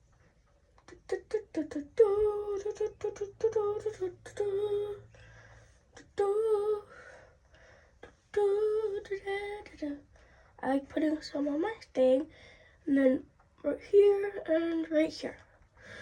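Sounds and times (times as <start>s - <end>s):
girl humming: 0.9s - 5.1s, 6.0s - 7.2s.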